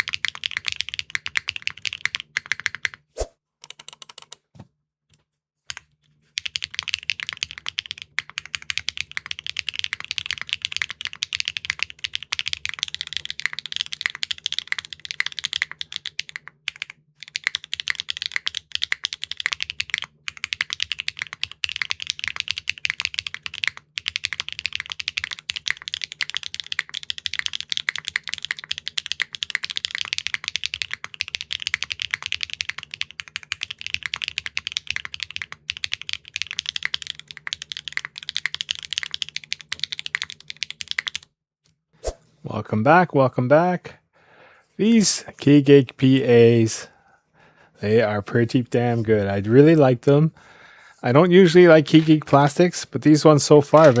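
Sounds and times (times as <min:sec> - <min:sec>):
mechanical keyboard typing: 0:00.0 - 0:03.0, 0:03.6 - 0:04.4, 0:05.7 - 0:41.3, 0:53.7 - 0:54.0.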